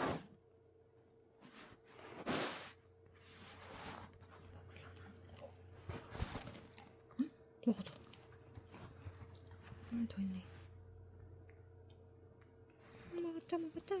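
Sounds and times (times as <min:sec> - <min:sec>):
cat crunching on a treat: 0:04.2 - 0:07.0.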